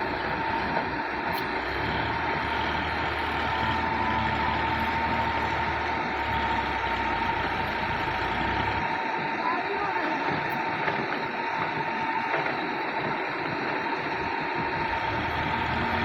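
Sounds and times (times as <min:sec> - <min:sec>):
deep engine rumble: 0:00.0 - 0:12.4
diesel machinery high whine: 0:00.0 - 0:16.0.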